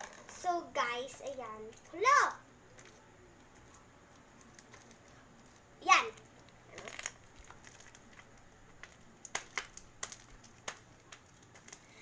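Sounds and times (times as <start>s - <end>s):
sticky slime clicks and crackles: 2.7s - 12.0s.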